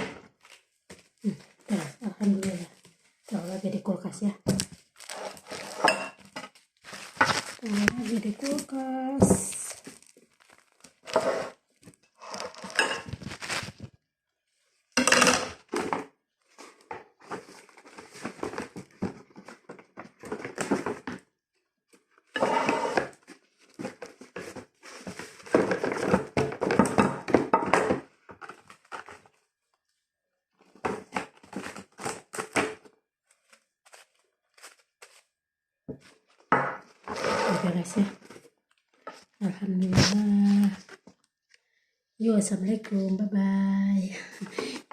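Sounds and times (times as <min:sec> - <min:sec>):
food packaging crinkling: 0:04.5 - 0:14.0, 0:30.6 - 0:35.3.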